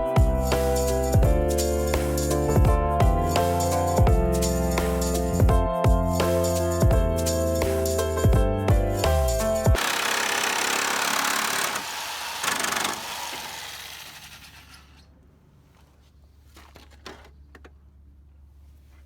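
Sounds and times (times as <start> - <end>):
power tool whirring: 9.8 - 15.1.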